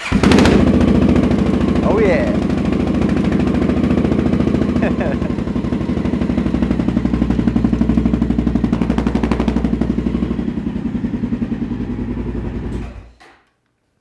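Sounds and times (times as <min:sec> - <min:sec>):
motorcycle engine idling: 0:00.0 - 0:13.1.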